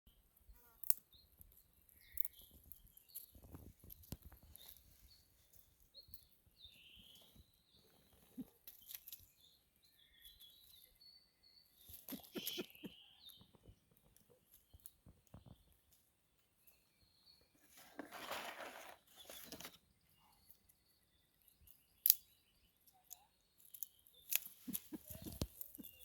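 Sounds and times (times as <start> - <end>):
birds chirping and whistling: 2.0 - 13.7, 24.0 - 26.0.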